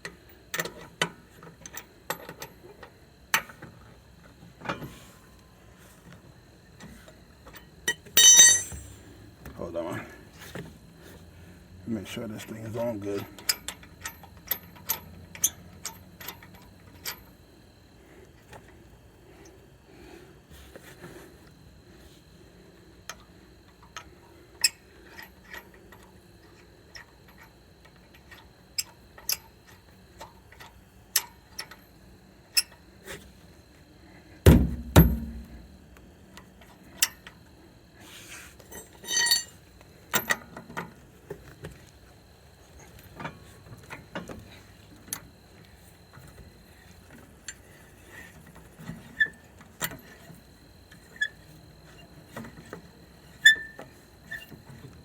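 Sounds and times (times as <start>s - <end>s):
tire iron clinking on lug nuts: 7.5s - 9.1s, 13.0s - 17.3s, 34.5s - 35.6s, 38.6s - 40.6s, 53.3s - 54.5s
loud double thump: 34.5s - 35.4s.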